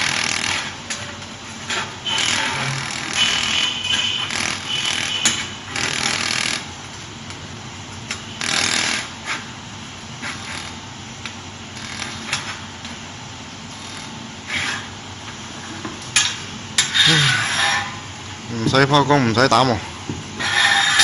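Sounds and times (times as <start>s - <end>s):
welding machine buzzing hiss: 0.0s - 18.6s.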